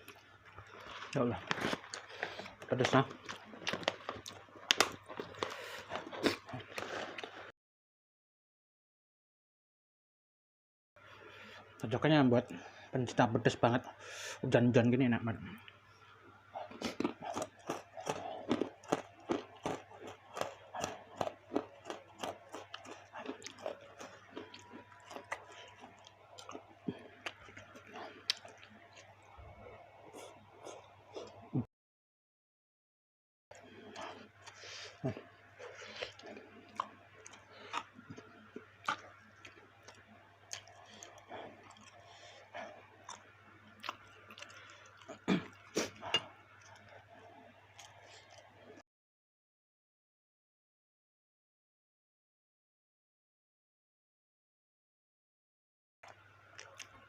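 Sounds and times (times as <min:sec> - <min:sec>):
close-up chewing: 0:00.0 - 0:07.5, 0:16.5 - 0:31.5, 0:33.5 - 0:48.8
faint steady hum: 0:11.0 - 0:31.7, 0:33.5 - 0:48.8.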